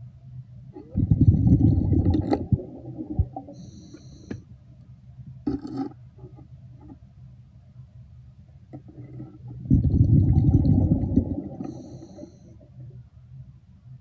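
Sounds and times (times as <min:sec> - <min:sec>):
underwater air bubbling: 0:00.8 - 0:04.0, 0:09.6 - 0:12.7.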